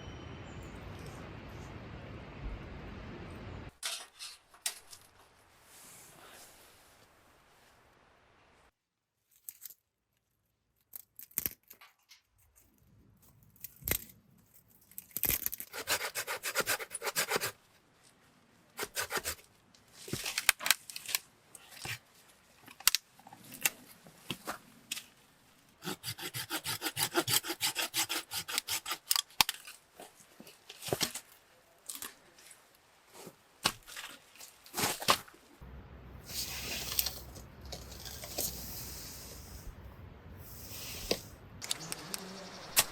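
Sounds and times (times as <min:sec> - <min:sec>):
hand saw rasping through wood: 0:15.7 - 0:17.5, 0:18.8 - 0:19.4, 0:25.8 - 0:29.2.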